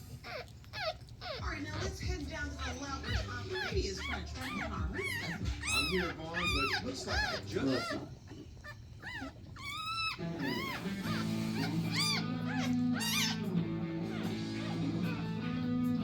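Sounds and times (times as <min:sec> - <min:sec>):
puppies squealing: 0:00.0 - 0:16.0
guitar background music: 0:10.2 - 0:16.0.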